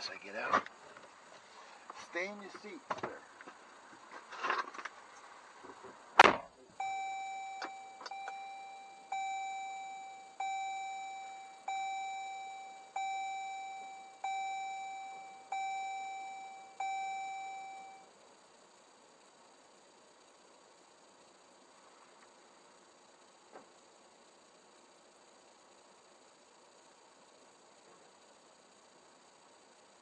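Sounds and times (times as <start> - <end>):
car door shutting: 6.2 - 18.0
electronic car warning chime: 6.8 - 18.1.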